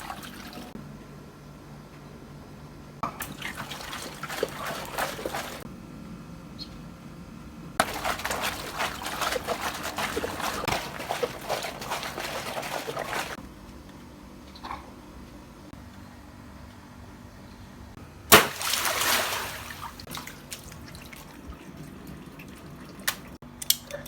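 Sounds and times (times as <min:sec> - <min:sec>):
water pouring and splattering: 0:00.0 - 0:00.8, 0:03.0 - 0:05.7, 0:07.8 - 0:13.4, 0:18.3 - 0:23.4.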